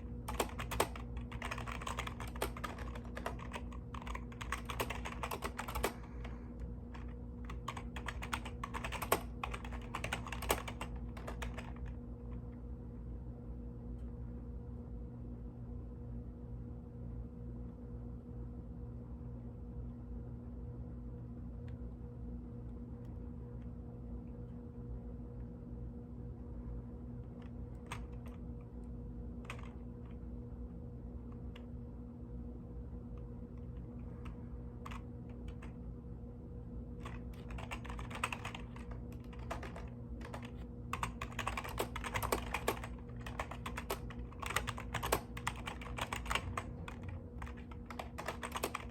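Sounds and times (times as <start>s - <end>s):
mechanical keyboard typing: 0.0s - 12.0s, 27.4s - 28.4s, 29.4s - 29.8s, 34.8s - 35.8s, 37.0s - 48.9s
low electrical hum: 0.0s - 48.9s.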